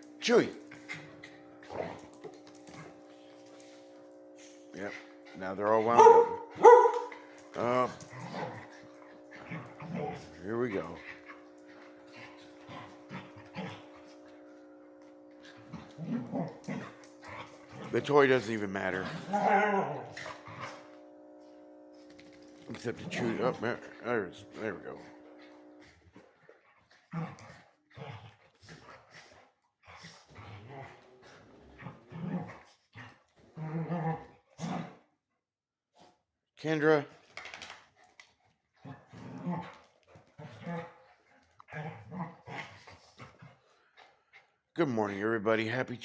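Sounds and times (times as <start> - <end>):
steady hum: 0.0 - 25.8
dogs growling in play: 0.0 - 35.1, 37.1 - 44.7
dog whining: 6.0 - 7.2, 19.1 - 20.8
dogs yipping and snuffling: 6.0 - 7.2.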